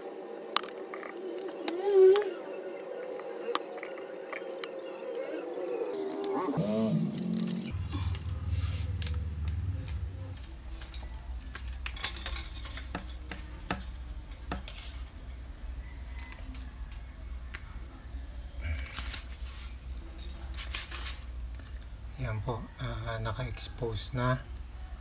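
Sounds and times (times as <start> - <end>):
clicks and clinks of wire handling: 6.0 - 15.2
steady low hum: 6.6 - 12.6.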